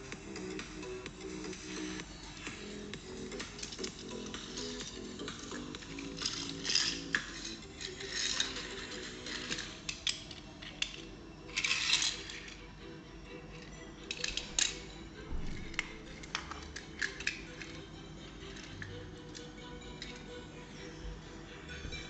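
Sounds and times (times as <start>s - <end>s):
faint background music: 0.0s - 22.0s
toy cars clicking and clinking: 2.3s - 12.7s, 13.5s - 20.4s.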